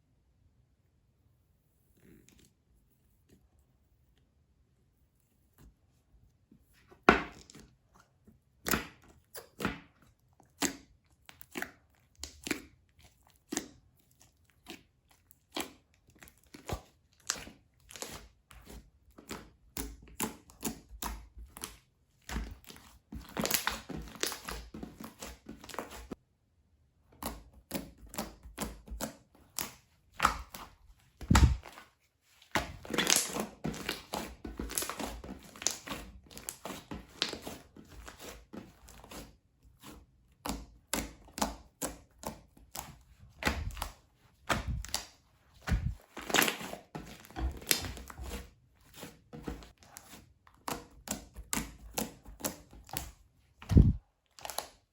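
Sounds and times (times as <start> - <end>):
hands squishing slime: 6.8 - 26.2, 27.1 - 54.9.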